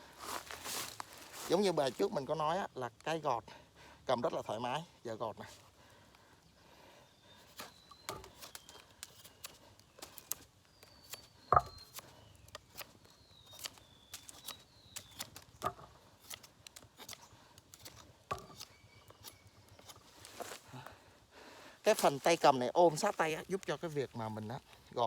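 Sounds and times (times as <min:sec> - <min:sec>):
knife whittling wood: 0:07.4 - 0:20.6.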